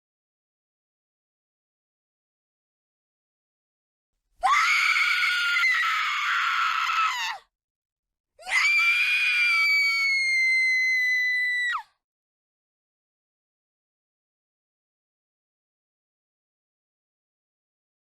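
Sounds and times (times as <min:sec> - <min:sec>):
woman screaming: 0:04.4 - 0:07.4.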